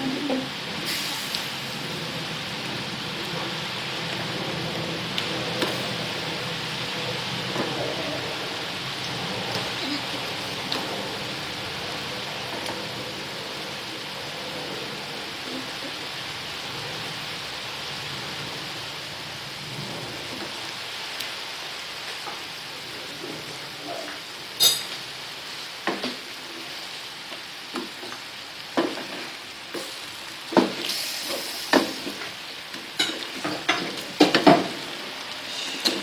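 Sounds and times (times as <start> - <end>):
food sizzling in a frying pan: 0.0 - 36.0.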